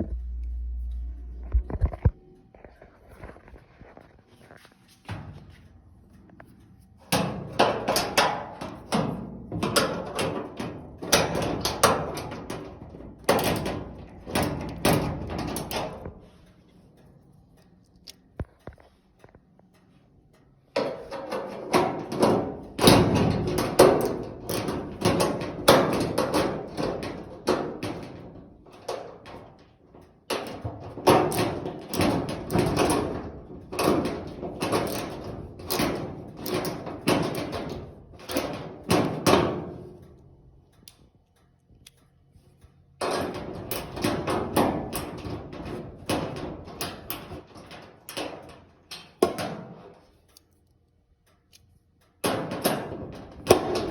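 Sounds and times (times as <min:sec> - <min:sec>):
hard parts knocking and clattering: 0:06.2 - 0:17.1, 0:20.7 - 0:40.9, 0:42.9 - 0:50.4, 0:52.0 - 0:53.9.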